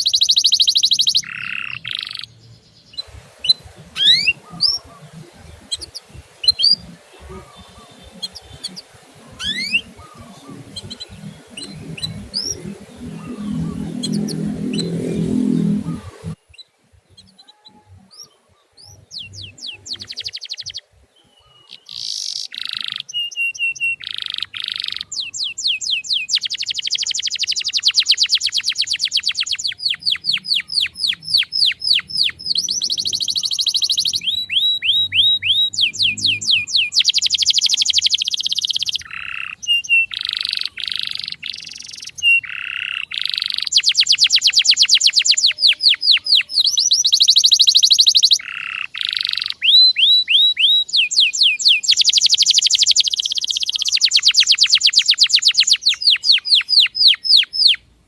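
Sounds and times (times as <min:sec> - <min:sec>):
canary singing trills: 0:00.0 - 0:57.9.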